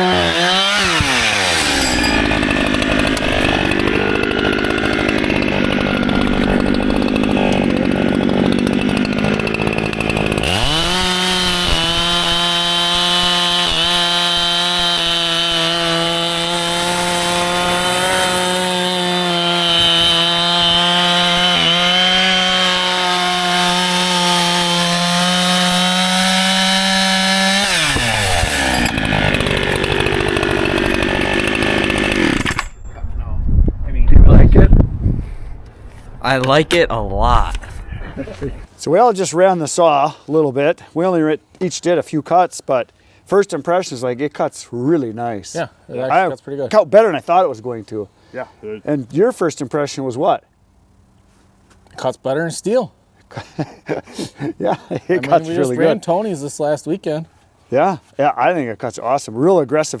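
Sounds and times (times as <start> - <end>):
chainsaw cutting wood: 0.0 - 32.8.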